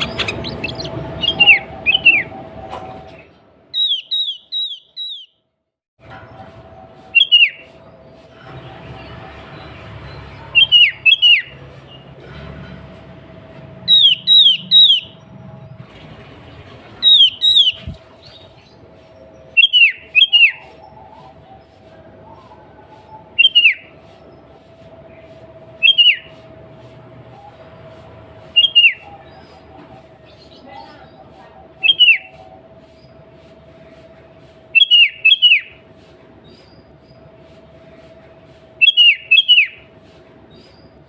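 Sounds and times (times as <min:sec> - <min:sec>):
bird whistled calls: 0:00.0 - 0:02.8, 0:03.7 - 0:05.4, 0:07.1 - 0:07.8, 0:10.5 - 0:11.6, 0:13.9 - 0:15.3, 0:17.0 - 0:18.6, 0:19.2 - 0:24.1, 0:25.8 - 0:26.5, 0:28.4 - 0:29.7, 0:31.8 - 0:33.2, 0:34.7 - 0:35.8, 0:38.8 - 0:39.9.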